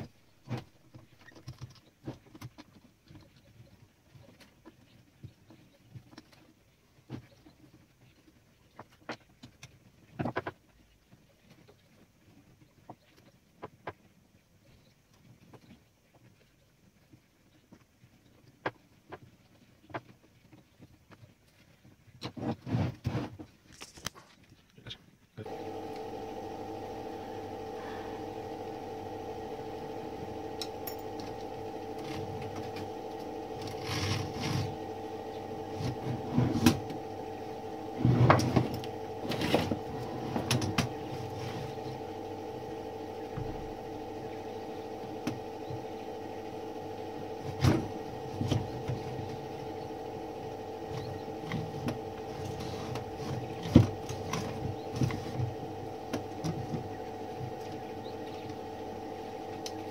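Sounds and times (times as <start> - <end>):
steady two-tone hum: 25.4 - 59.9.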